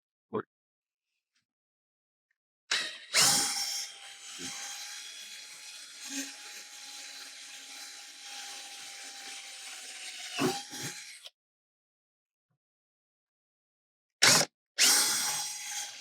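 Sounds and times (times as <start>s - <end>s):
electric drill whining: 2.7s - 11.3s.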